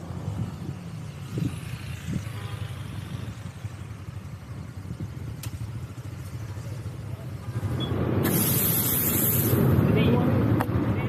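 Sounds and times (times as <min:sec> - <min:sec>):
scooter engine rumbling: 0:00.0 - 0:11.0
faint hiss: 0:08.2 - 0:09.7.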